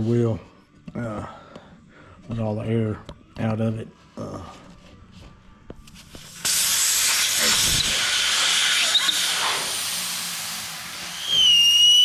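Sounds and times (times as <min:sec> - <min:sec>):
air hissing out of tire: 0:05.9 - 0:12.0.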